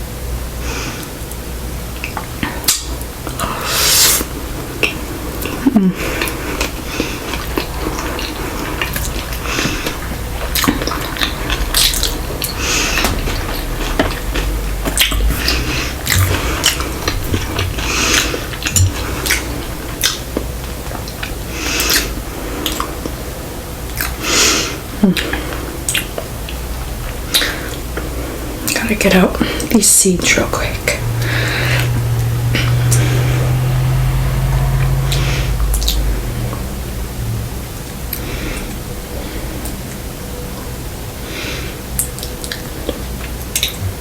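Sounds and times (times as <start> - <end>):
chewing and wet mouth sounds: 2.0 - 29.8, 41.8 - 44.0.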